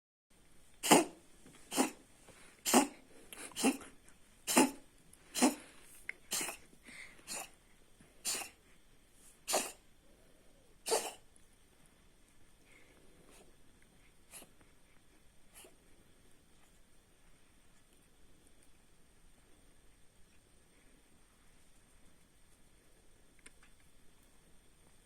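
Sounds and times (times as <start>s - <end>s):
kitten coughing: 0.8s - 2.0s, 2.6s - 3.9s, 4.5s - 5.6s, 6.3s - 7.5s, 8.2s - 8.6s, 9.5s - 9.8s, 10.8s - 11.2s.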